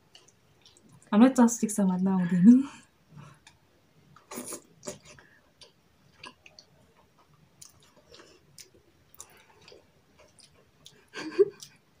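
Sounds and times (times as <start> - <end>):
chewing: 0.1 - 1.1, 4.2 - 11.9.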